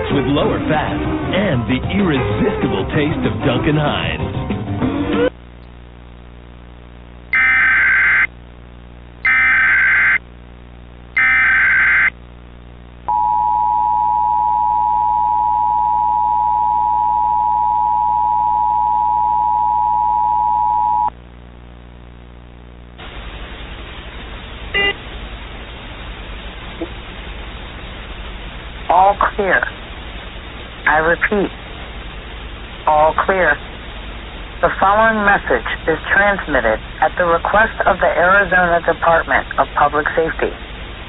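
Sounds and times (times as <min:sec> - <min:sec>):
low hum: 0:00.0 - 0:41.0
data header bursts: 0:07.3 - 0:08.3, 0:09.2 - 0:10.2, 0:11.2 - 0:12.1, 0:24.7 - 0:25.0
two-tone attention signal: 0:11.2 - 0:12.1, 0:24.8 - 0:25.0.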